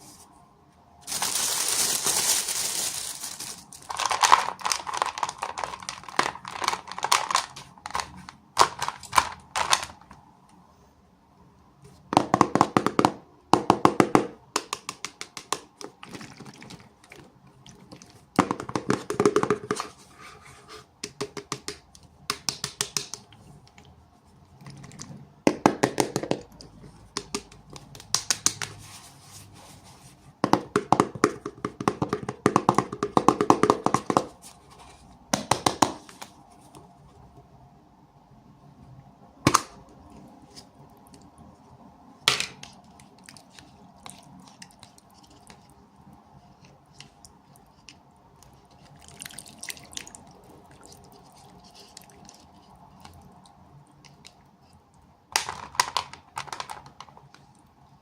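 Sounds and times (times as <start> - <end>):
plastic packaging crackling: 1.0 - 10.0.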